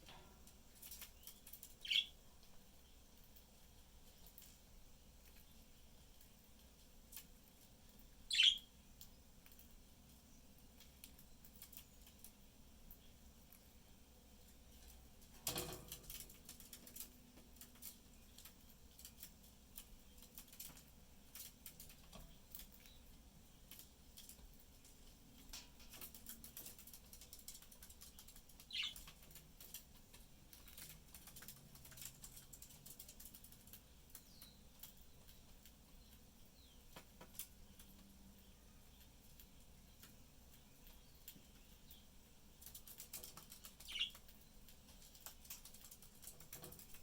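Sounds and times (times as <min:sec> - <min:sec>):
budgies pecking at food: 0:00.0 - 0:47.0
budgie chirp: 0:01.8 - 0:02.1, 0:08.3 - 0:08.7.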